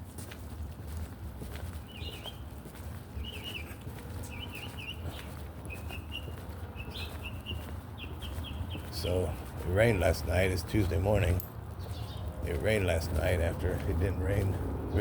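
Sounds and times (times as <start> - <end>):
small bird chirping: 1.8 - 2.6, 3.2 - 9.5.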